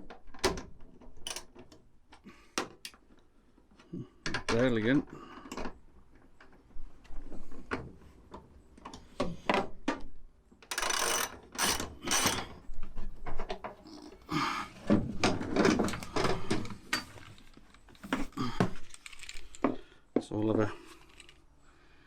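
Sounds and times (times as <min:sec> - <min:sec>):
socket ratchet clicking: 0:01.3 - 0:01.6, 0:10.7 - 0:12.6.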